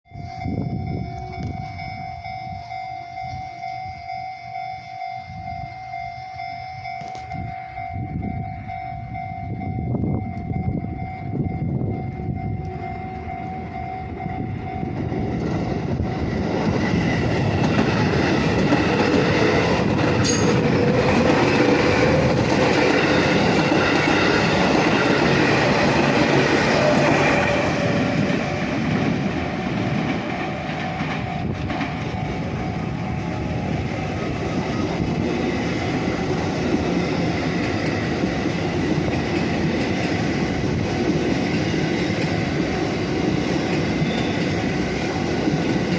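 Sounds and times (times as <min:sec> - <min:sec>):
crossing warning bell ringing: 0:00.0 - 0:45.9
train wheels rushing on rail: 0:00.2 - 0:45.9
wheels clacking over rail joints: 0:15.3 - 0:32.5.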